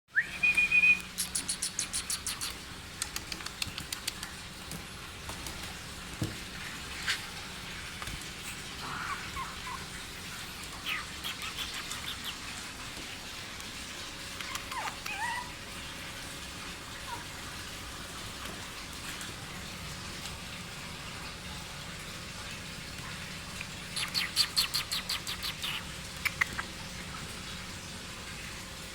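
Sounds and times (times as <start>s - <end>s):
puppies squeaking and whimpering: 8.4s - 12.6s, 14.3s - 15.7s, 17.0s - 17.3s.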